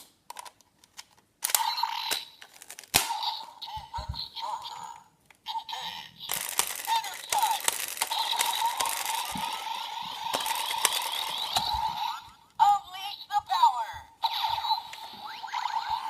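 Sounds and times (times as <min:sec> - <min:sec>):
plastic clicks: 0:00.0 - 0:03.2, 0:06.3 - 0:09.6
toy electronic sound effects: 0:01.4 - 0:16.0.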